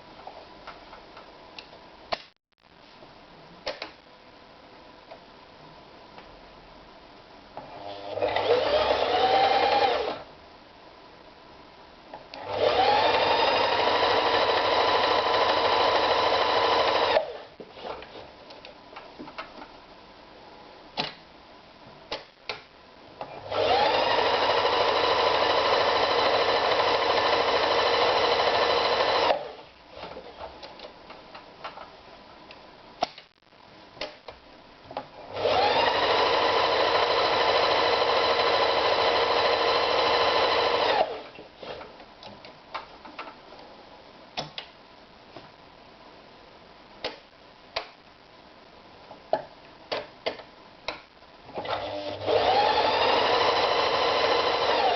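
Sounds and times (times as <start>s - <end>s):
sewing machine stitching: 7.6s - 10.2s, 12.4s - 17.4s, 23.3s - 29.5s, 35.3s - 41.8s, 51.6s - 54.9s.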